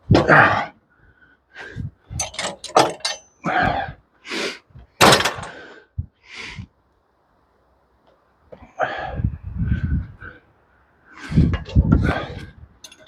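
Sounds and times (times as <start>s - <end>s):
wooden knocks and clatters: 2.2s - 3.2s.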